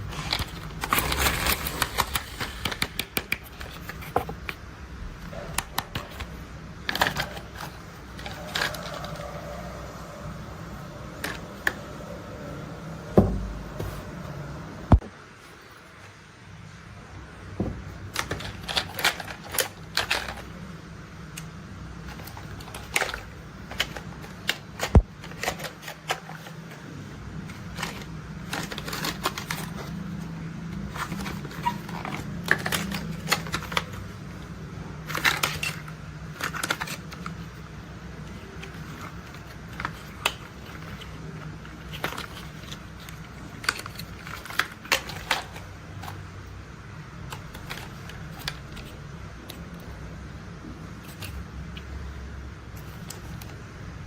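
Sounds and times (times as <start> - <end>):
plastic toys clicking and knocking: 18.0 - 20.5, 22.0 - 26.8, 30.8 - 34.1, 35.0 - 46.2.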